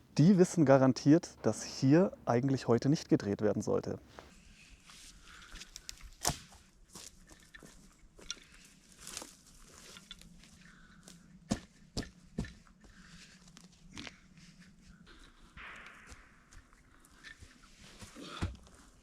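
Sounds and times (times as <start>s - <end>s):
twigs snapping underfoot: 5.5s - 10.5s.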